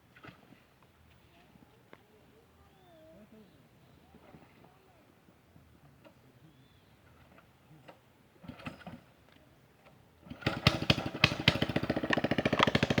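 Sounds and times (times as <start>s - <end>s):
small motorcycle engine starting: 8.4s - 9.1s, 9.8s - 13.0s.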